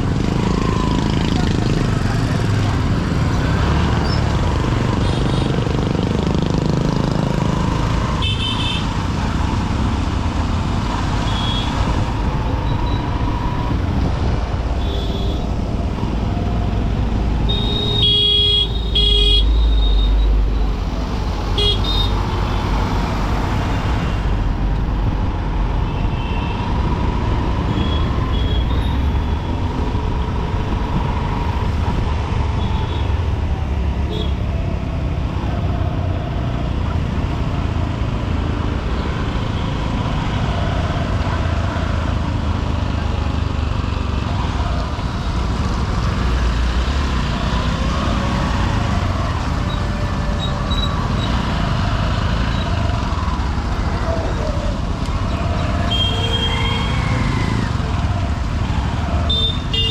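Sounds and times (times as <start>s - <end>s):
traffic engines and road noise: 0.0s - 59.9s
vehicle horns honking: 8.2s - 8.9s, 17.5s - 20.2s, 55.9s - 57.0s, 59.3s - 59.9s.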